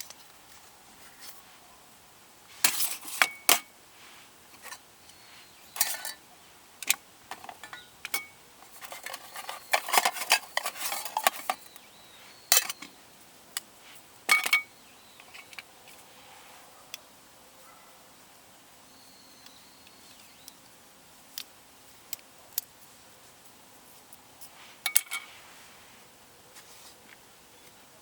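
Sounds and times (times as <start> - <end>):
metal cookware clinking: 5.8 - 6.2, 6.8 - 11.7, 12.5 - 12.8, 14.3 - 15.6, 24.9 - 25.3.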